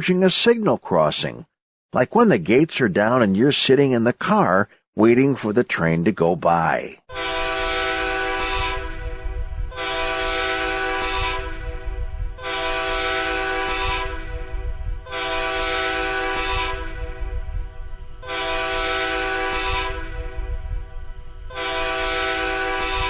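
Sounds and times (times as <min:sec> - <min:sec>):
moving train rumble: 0:07.1 - 0:23.0
train air horn blasts: 0:07.1 - 0:23.0.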